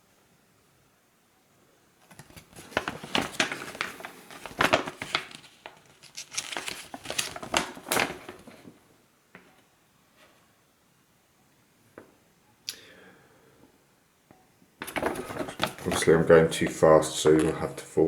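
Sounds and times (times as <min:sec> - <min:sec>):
paper crinkling: 0:02.0 - 0:08.7, 0:14.8 - 0:17.5.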